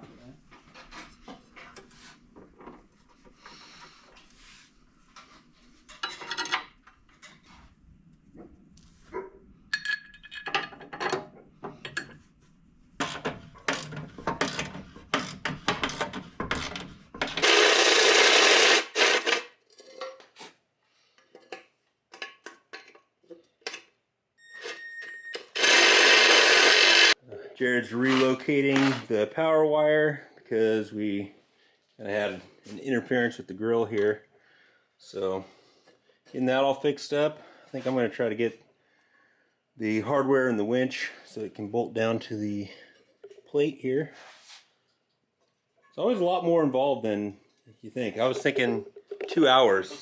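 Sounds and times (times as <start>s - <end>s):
rubbing and scraping of hardware: 9.9s - 20.6s.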